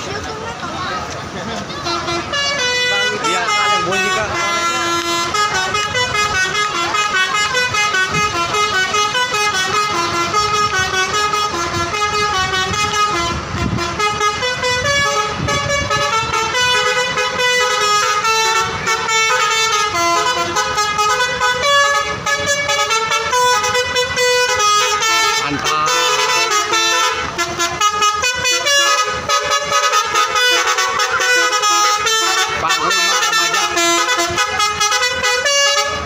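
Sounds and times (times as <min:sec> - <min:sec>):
bus horns playing melodies: 0:01.0 - 0:36.0.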